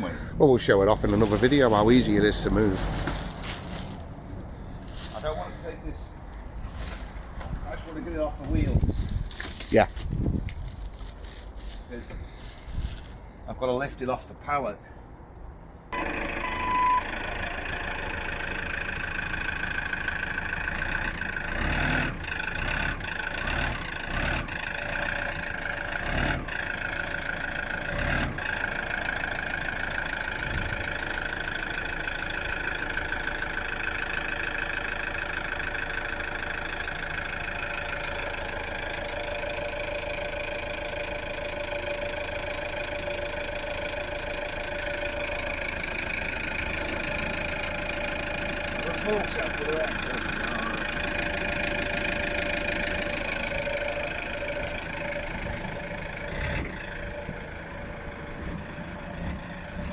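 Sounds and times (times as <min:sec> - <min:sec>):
motor running: 0:37.6 - 0:59.9.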